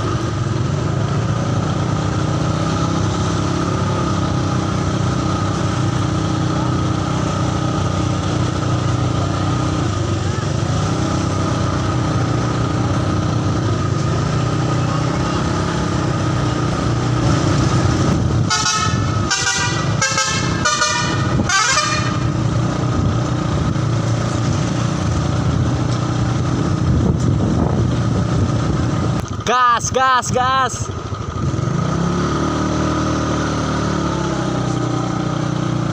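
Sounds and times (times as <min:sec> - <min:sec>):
engine rumble: 0:00.0 - 0:35.9
bus horn multi-tone blasts: 0:18.4 - 0:22.5.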